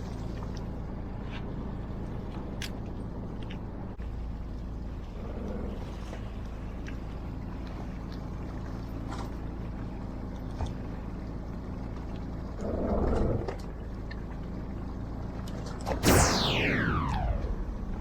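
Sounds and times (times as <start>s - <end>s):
brief rush of noise: 16.0s - 18.0s
sudden loud sound: 16.0s - 18.0s
whine falling in pitch: 16.0s - 18.0s.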